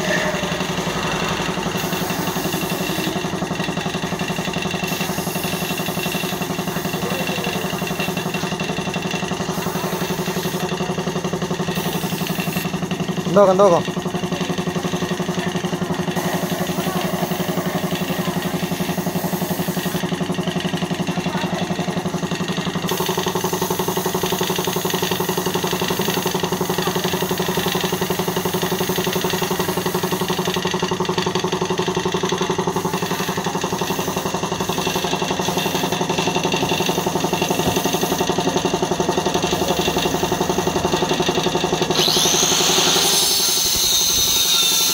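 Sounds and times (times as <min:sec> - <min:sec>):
air hissing: 0:00.0 - 0:12.8, 0:16.2 - 0:20.3, 0:22.8 - 0:39.0
air compressor motor drone: 0:00.0 - 0:44.9.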